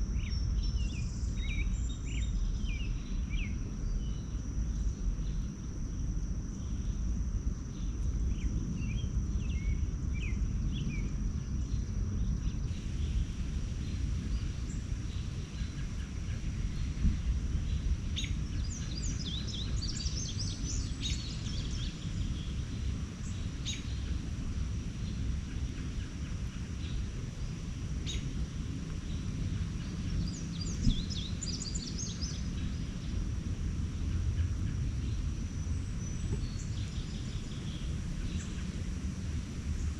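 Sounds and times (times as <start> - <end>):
steady low rumble: 0.0 - 39.9
wild birds chirping: 12.5 - 39.9.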